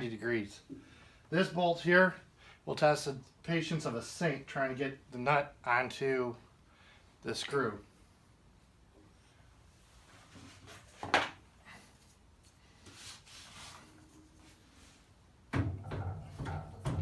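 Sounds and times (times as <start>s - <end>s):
handling and rubbing: 9.7s - 11.1s, 11.8s - 15.2s
knocks and clunks: 15.5s - 17.0s.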